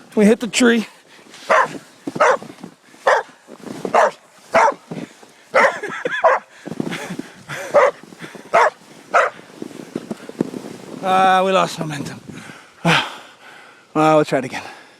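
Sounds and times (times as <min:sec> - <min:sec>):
dog barking: 0:01.5 - 0:02.4, 0:03.0 - 0:03.3, 0:03.9 - 0:04.8, 0:05.6 - 0:06.5, 0:07.7 - 0:09.4.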